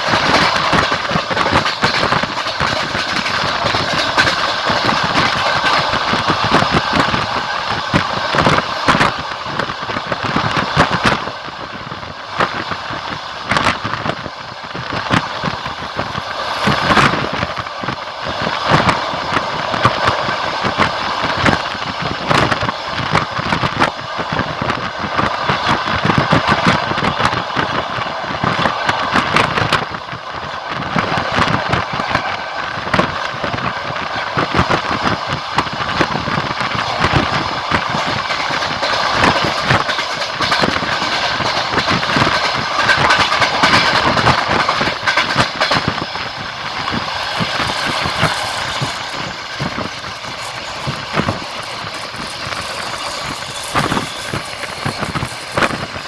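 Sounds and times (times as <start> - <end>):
train wheels clattering over rails: 0.0 - 56.0.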